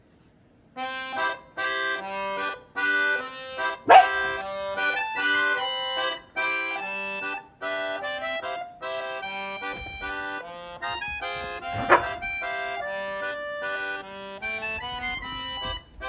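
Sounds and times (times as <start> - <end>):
accordion-like background music: 0.8 - 16.0
loud dog bark: 3.9 - 4.4, 11.7 - 12.2.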